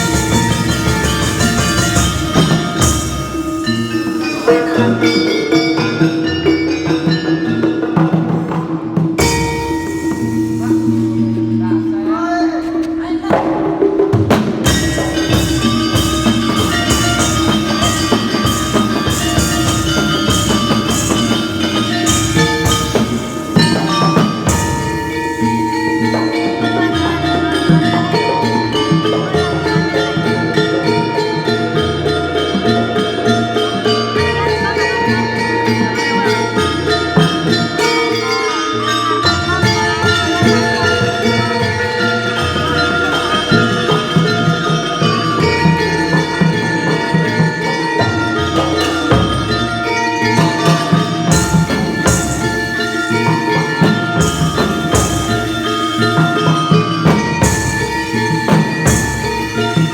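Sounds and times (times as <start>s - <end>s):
drums: 0.0s - 11.7s, 12.6s - 59.9s
gamelan metal keys ringing: 0.0s - 13.2s, 14.5s - 59.9s
struck metal mallet instruments: 0.0s - 59.9s.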